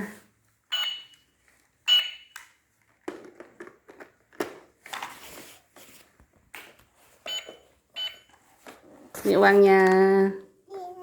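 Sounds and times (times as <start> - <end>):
toy cash register beep: 0.7 - 2.4, 7.2 - 8.3.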